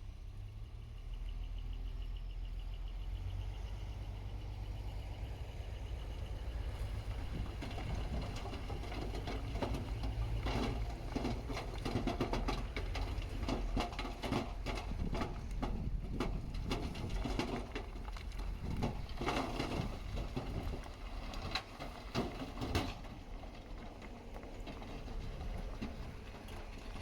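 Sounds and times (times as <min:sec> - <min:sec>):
heavy machine engine humming: 0:00.1 - 0:27.0
clatter of rattles and knocks: 0:06.8 - 0:27.0.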